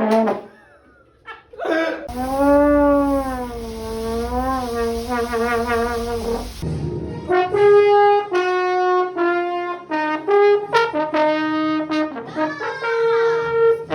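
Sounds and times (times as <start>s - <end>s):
trombone short notes and slides: 2.1s - 6.6s.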